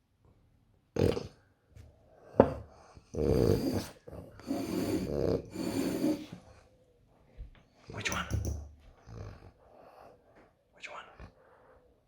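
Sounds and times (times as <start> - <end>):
dog snorting and snoring: 1.0 - 1.4, 3.1 - 6.2.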